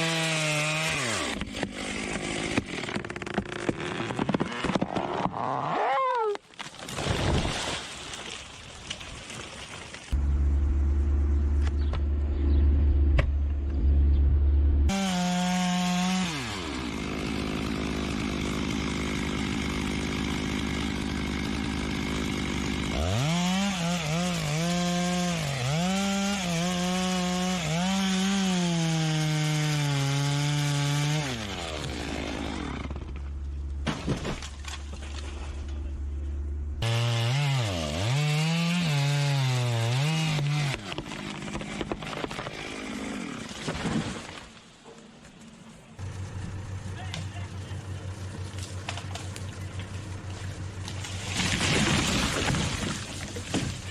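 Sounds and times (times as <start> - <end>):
chainsaw cutting wood: 0.0 - 5.8, 14.9 - 35.8, 36.8 - 44.4, 48.3 - 53.9
loud low hum: 10.2 - 15.1, 33.1 - 36.9, 46.0 - 51.6.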